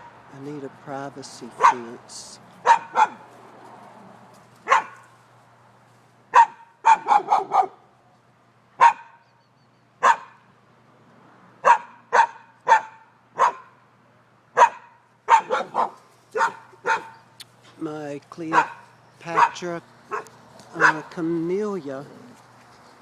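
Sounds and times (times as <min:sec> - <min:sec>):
dog barking: 0:01.6 - 0:02.0, 0:02.6 - 0:03.3, 0:04.6 - 0:05.1, 0:06.3 - 0:07.8, 0:08.8 - 0:09.2, 0:10.0 - 0:10.5, 0:11.6 - 0:13.8, 0:14.6 - 0:17.3, 0:18.5 - 0:21.1.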